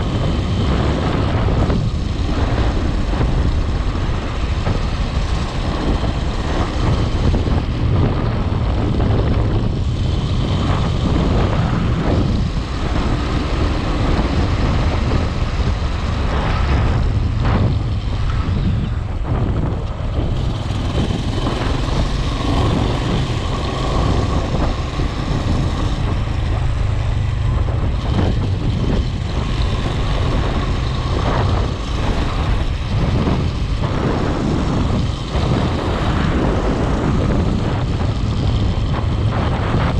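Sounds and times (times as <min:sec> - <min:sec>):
road noise: 0:00.0 - 0:39.9
vehicle engine rumble: 0:00.0 - 0:39.9.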